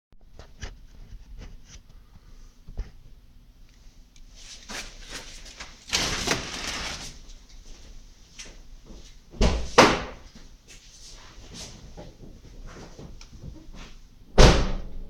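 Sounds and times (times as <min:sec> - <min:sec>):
car door scraping rush: 0:05.9 - 0:07.2.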